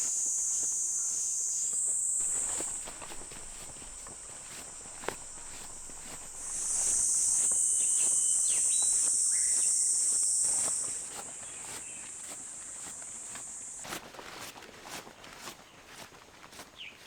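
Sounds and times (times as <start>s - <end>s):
cicadas buzzing: 0.0s - 14.3s
bird chirps: 2.2s - 10.6s
footsteps on dirt path: 2.2s - 12.9s.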